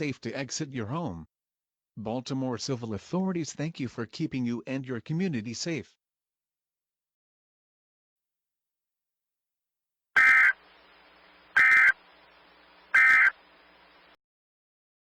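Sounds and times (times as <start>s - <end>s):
digital data tone bursts: 10.2s - 10.6s, 11.5s - 12.0s, 12.9s - 13.4s.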